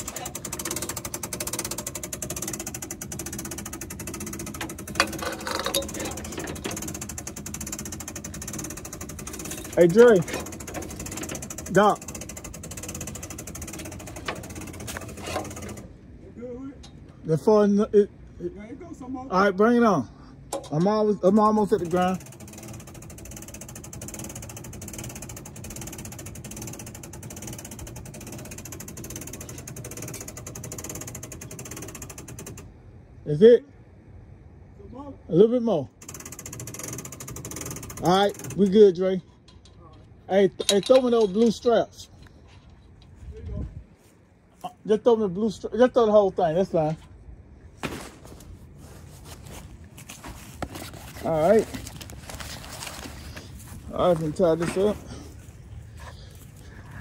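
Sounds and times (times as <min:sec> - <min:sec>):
hand-cranked winch clicking: 0:00.0 - 0:15.9, 0:20.5 - 0:32.7, 0:35.9 - 0:43.1
equipment lift mechanical clatter: 0:00.0 - 0:16.0, 0:20.5 - 0:32.8, 0:35.9 - 0:43.2.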